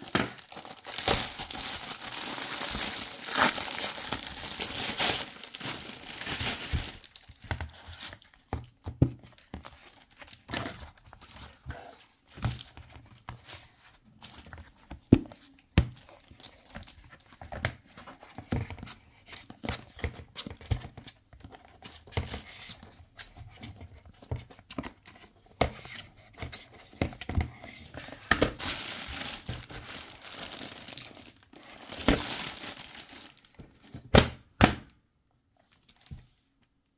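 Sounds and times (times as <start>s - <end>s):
plastic packaging crinkling: 0.0s - 8.4s, 28.5s - 33.6s.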